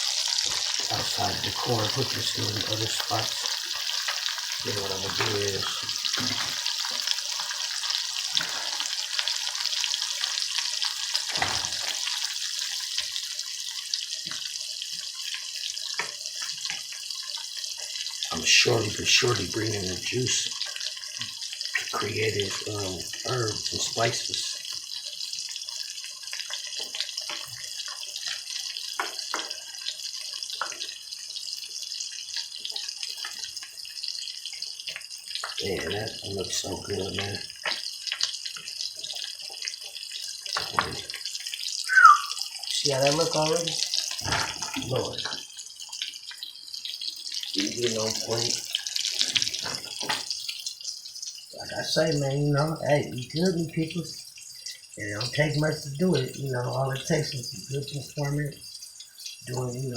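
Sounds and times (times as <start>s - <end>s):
food sizzling in a pan: 0.0s - 59.9s
crackles and pops of spattering: 24.7s - 51.6s.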